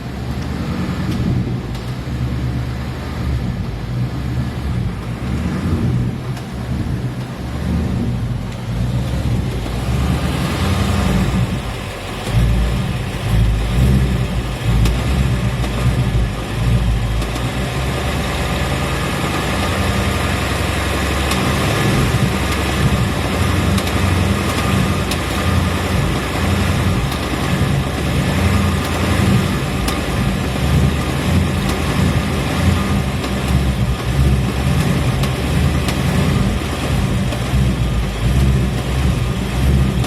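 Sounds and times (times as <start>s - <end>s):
car engine idling: 0.0s - 40.0s
engine ticking: 0.0s - 40.0s.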